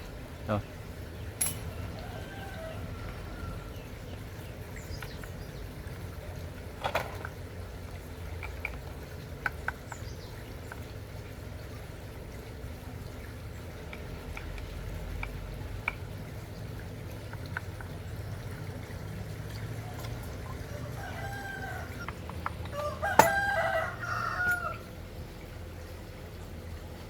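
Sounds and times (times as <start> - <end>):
low steady rumble: 0.0 - 27.0
rooster crowing: 1.6 - 4.0, 19.8 - 25.0.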